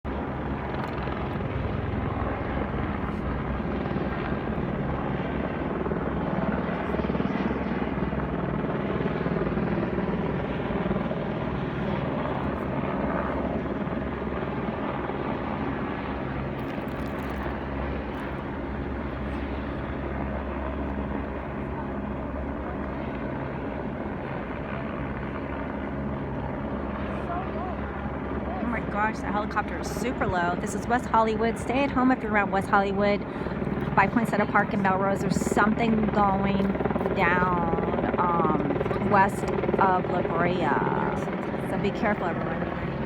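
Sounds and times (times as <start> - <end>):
helicopter rotor beating: 0.1 - 43.0.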